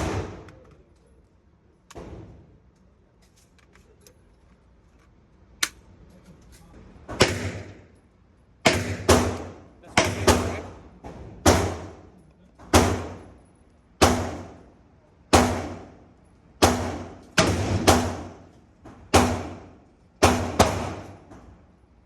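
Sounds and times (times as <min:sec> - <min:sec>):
rifle shots with echo: 0:00.0 - 0:00.5, 0:07.2 - 0:07.9, 0:08.6 - 0:12.1, 0:12.7 - 0:13.4, 0:14.0 - 0:14.7, 0:15.3 - 0:16.0, 0:16.6 - 0:18.5, 0:19.1 - 0:21.3.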